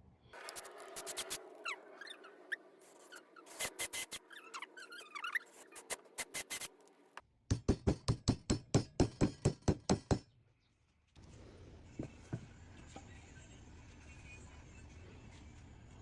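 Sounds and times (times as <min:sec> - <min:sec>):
hammer tapping on wood: 0:07.5 - 0:10.2.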